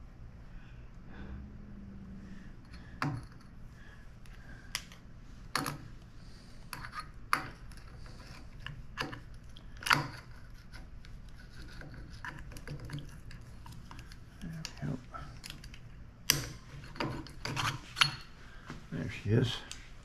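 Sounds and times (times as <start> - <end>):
metal tools scraping metal tube: 16.8 - 18.3.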